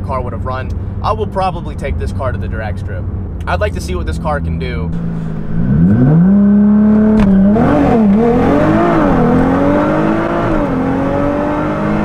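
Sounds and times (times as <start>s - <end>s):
car engine accelerating: 3.0s - 12.0s.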